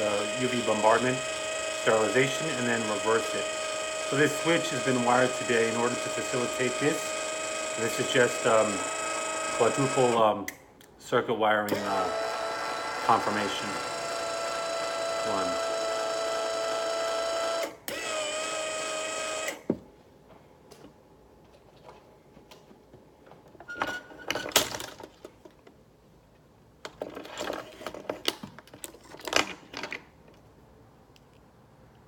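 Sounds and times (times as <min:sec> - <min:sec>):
actuator motor whining: 0:00.0 - 0:10.6, 0:11.7 - 0:19.7.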